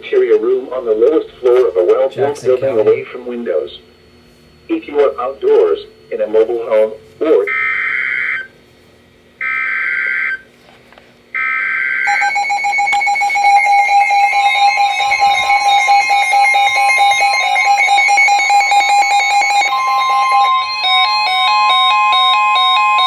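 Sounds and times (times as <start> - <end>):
continuous electronic alert tone: 4.7 - 8.5, 11.4 - 23.0
digital data tone bursts: 11.4 - 22.2.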